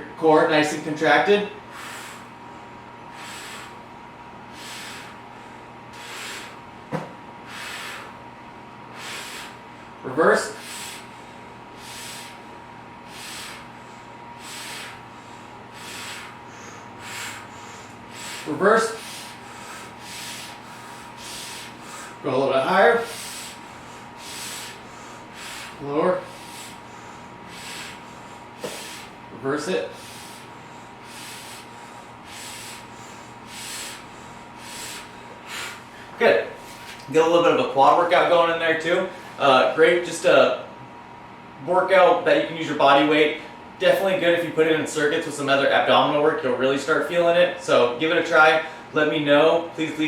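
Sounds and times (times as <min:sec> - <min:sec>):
person breathing hissily: 0:01.7 - 0:02.3, 0:03.1 - 0:03.9, 0:04.5 - 0:05.3, 0:05.9 - 0:06.6, 0:07.4 - 0:08.2, 0:08.9 - 0:09.6, 0:10.4 - 0:22.2, 0:22.8 - 0:29.2, 0:29.8 - 0:37.0.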